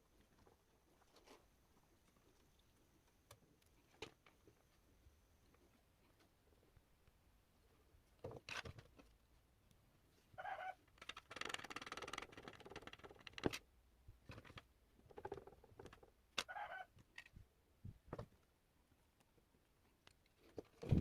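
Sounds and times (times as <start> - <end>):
small parts clicking and tapping: 10.8 - 13.6.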